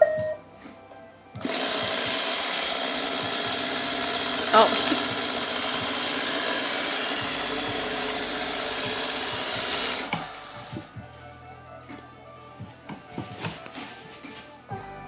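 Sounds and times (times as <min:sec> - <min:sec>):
robot vacuum motor whirring: 0:01.4 - 0:11.0.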